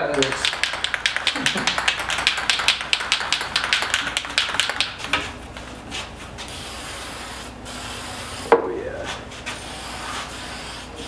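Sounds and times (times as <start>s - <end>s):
aerosol can ball rattling: 0.0s - 5.4s.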